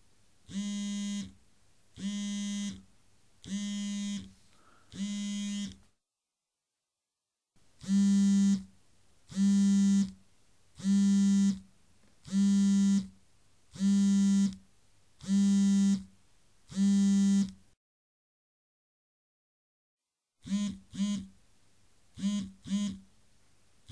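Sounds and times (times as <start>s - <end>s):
low harsh electronic buzzer: 0.5s - 1.4s, 2.0s - 2.8s, 3.5s - 4.3s, 5.0s - 5.8s, 7.8s - 8.7s, 9.3s - 10.2s, 10.8s - 11.6s, 12.3s - 13.1s, 13.8s - 14.6s, 15.2s - 16.1s, 16.7s - 17.6s, 20.4s - 21.3s, 22.2s - 23.0s.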